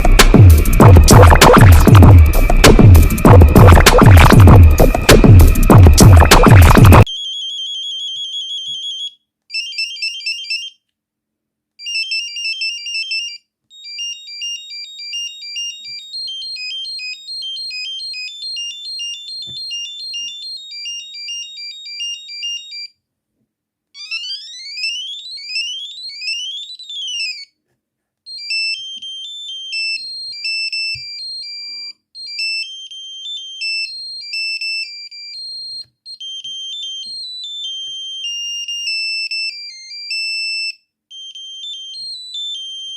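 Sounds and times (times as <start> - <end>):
rising and falling electronic sweeps: 0.0 - 7.1
phone beeping melodies: 0.0 - 9.0, 28.4 - 42.9.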